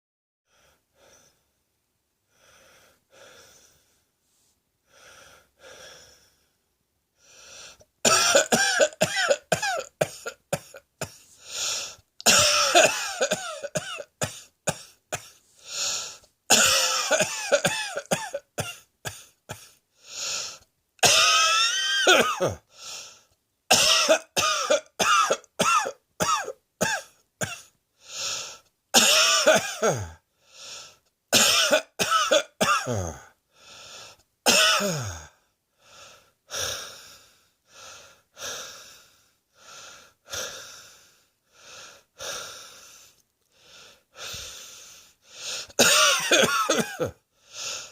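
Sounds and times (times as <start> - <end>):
person coughing: 8.1 - 11.2, 12.2 - 15.4, 16.5 - 19.8, 21.0 - 22.6, 23.7 - 27.7, 29.0 - 30.2, 31.4 - 33.3, 34.5 - 35.3, 45.7 - 47.2.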